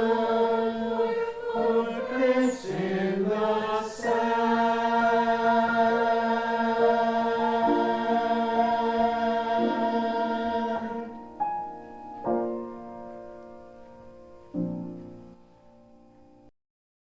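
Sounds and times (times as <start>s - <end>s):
held chord with voices: 0.0s - 11.4s
struck piano chords: 0.0s - 16.5s.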